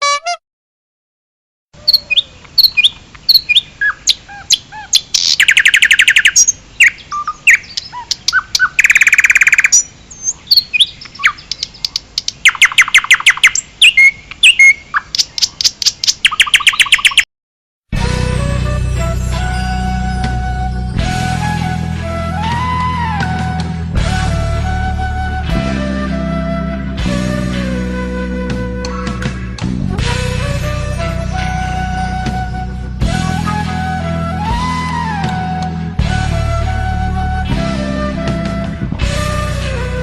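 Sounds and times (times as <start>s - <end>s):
songbird singing: 1.8s - 17.3s, 28.2s - 29.7s.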